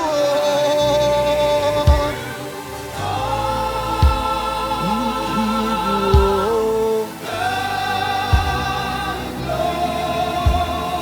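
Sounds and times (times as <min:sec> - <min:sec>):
bass: 0:00.0 - 0:11.0
sustained keyboard chords: 0:00.0 - 0:11.0
kick drum thud: 0:01.9 - 0:02.2, 0:04.0 - 0:04.3, 0:06.2 - 0:06.5, 0:08.3 - 0:08.6, 0:10.5 - 0:10.8.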